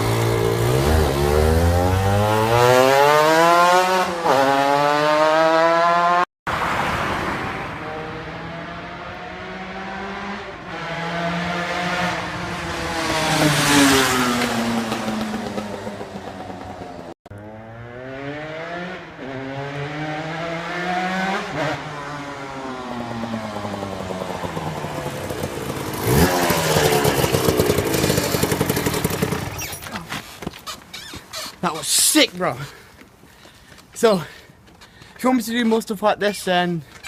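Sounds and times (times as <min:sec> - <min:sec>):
motorcycle engine revving: 0:00.0 - 0:06.2, 0:08.0 - 0:29.9.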